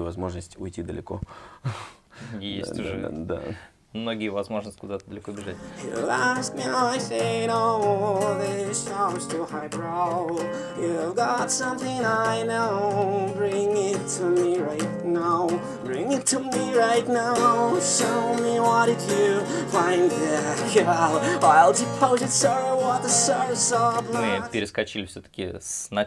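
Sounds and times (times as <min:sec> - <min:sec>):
acoustic guitar strumming: 0:05.5 - 0:24.6
person singing with vibrato: 0:05.6 - 0:24.6.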